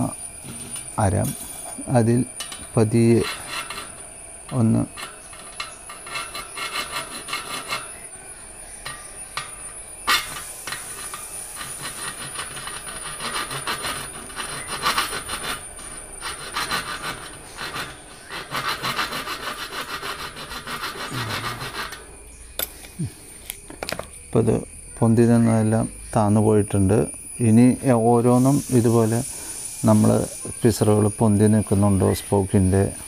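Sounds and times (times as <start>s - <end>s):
hand file rasping on metal: 2.3s - 8.1s, 8.8s - 22.2s.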